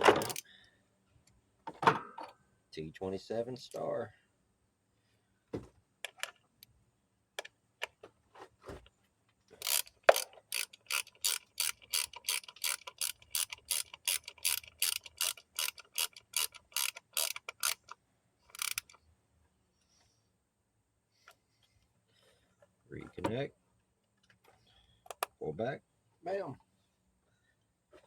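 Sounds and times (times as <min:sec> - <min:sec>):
hand ratchet clicking: 0:00.2 - 0:00.4, 0:09.6 - 0:19.0.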